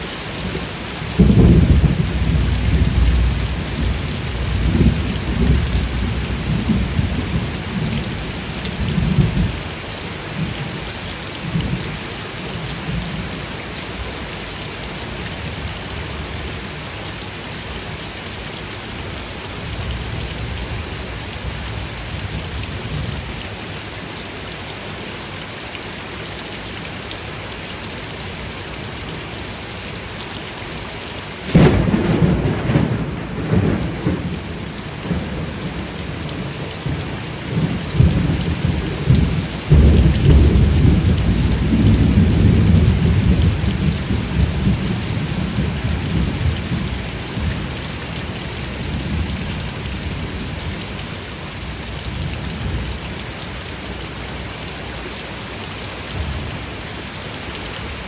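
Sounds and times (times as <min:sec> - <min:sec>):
steady rain falling: 0:00.0 - 0:58.0
rolling thunder rumbling: 0:01.1 - 0:09.6, 0:31.5 - 0:48.0
sharp thunderclap: 0:01.2 - 0:07.4, 0:31.5 - 0:47.6.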